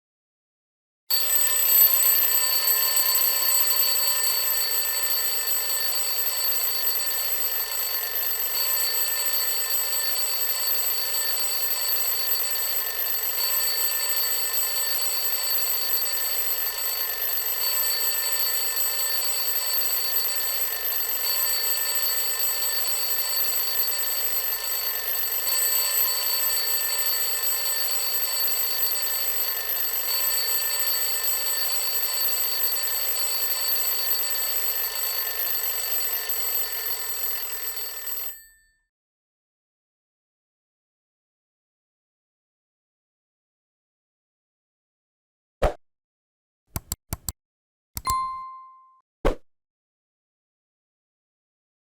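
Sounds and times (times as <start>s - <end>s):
alarm clock ringing: 1.1s - 38.4s.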